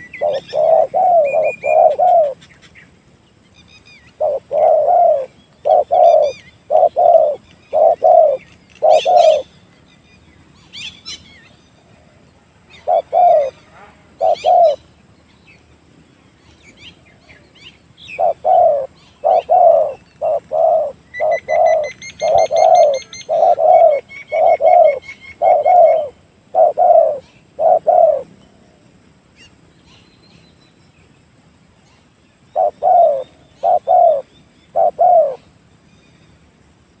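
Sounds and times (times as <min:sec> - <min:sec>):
dove cooing: 0:00.0 - 0:02.4, 0:04.2 - 0:09.5, 0:12.7 - 0:14.8, 0:18.1 - 0:28.3, 0:32.6 - 0:35.5
small birds chirping: 0:00.0 - 0:11.8, 0:12.7 - 0:28.7, 0:31.8 - 0:36.5.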